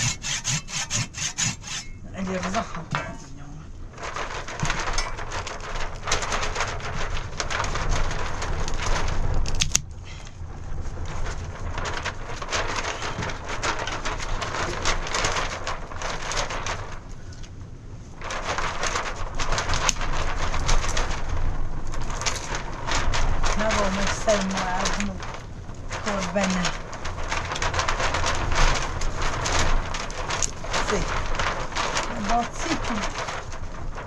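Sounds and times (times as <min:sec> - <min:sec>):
heavy rain falling: 0:10.3 - 0:17.2, 0:18.2 - 0:34.0.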